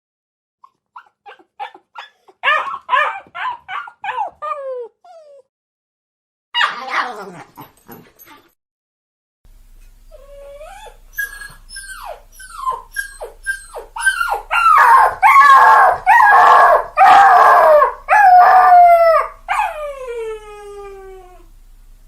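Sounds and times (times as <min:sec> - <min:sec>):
dog yelping: 0:00.6 - 0:05.4, 0:06.6 - 0:08.4, 0:10.2 - 0:19.8
dog howling: 0:12.0 - 0:21.5.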